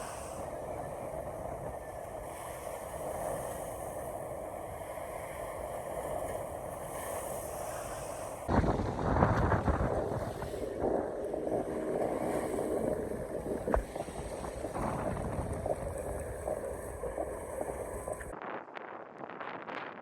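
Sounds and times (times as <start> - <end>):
wind buffeting microphone: 8.4 - 20.0.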